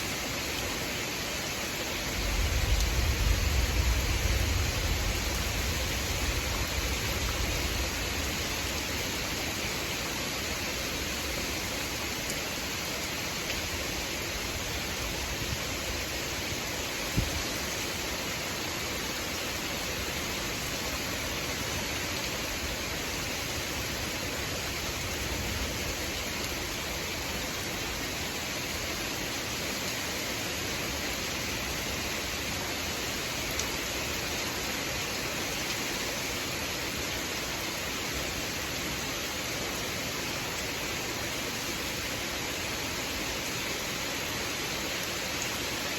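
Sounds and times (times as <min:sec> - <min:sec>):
steady rain pouring: 0:00.0 - 0:45.9
low thunder rumble: 0:02.2 - 0:08.3.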